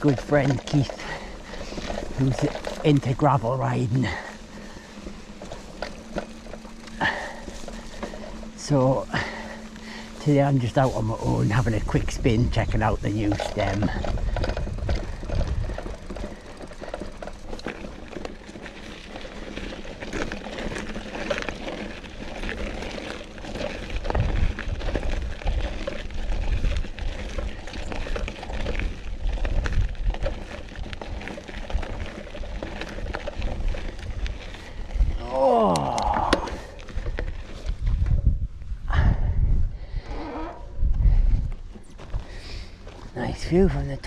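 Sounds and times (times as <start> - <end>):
bike rattles and clicks: 0.0 - 44.0
bike tyres crunching on gravel: 0.0 - 44.0
wind buffeting microphone: 9.1 - 17.6, 22.0 - 42.6.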